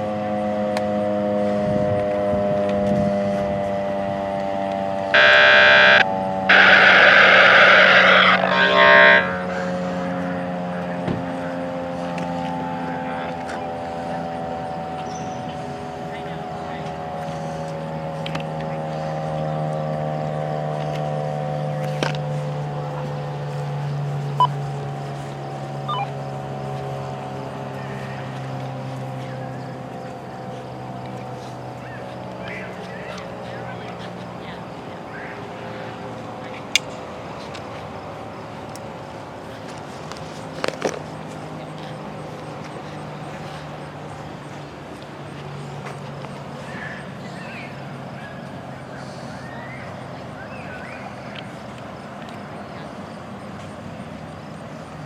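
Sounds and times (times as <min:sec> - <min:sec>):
short sharp chirps: 0:05.2 - 0:09.3, 0:25.9 - 0:26.1
warning siren winding down: 0:05.2 - 0:09.9, 0:25.9 - 0:26.3
horn blasts: 0:05.2 - 0:10.0
steady humming tone: 0:05.2 - 0:10.2.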